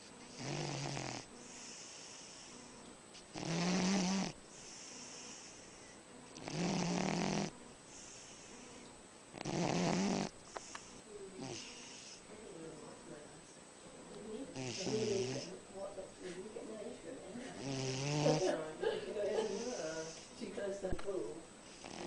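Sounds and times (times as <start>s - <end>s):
pet snoring: 0.0s - 12.3s, 14.5s - 15.6s, 17.4s - 18.6s, 19.4s - 20.4s, 21.6s - 22.0s
soft breathing: 1.3s - 3.4s, 4.4s - 6.3s, 7.8s - 9.0s, 10.3s - 13.0s, 14.3s - 17.7s, 18.9s - 20.4s.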